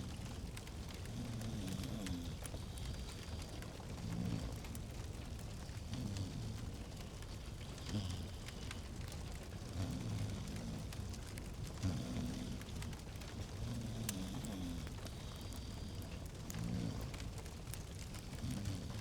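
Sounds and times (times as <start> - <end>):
log fire crackling and popping: 0.0 - 19.0
low rumble of flames: 0.0 - 19.0.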